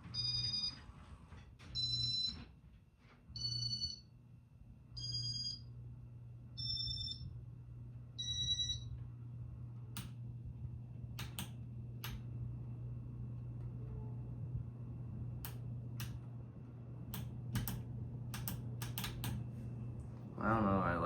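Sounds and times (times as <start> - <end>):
ceiling fan motor hum: 0.0 - 21.0
sharp clicks: 11.2 - 12.3, 17.1 - 19.4.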